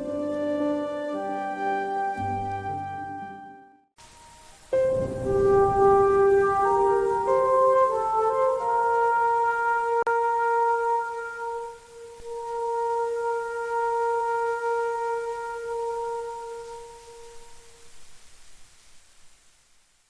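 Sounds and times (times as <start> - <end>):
music with held wind chord: 0.0 - 18.3.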